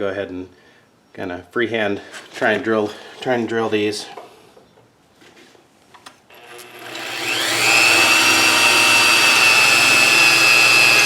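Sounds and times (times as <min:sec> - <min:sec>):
electric drill drilling steel: 0:06.3 - 0:11.0.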